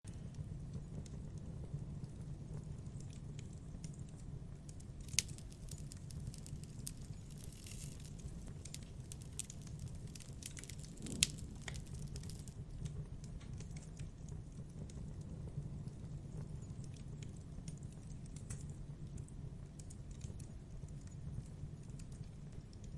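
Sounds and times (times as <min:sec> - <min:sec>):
campfire crackling: 0:05.1 - 0:12.5.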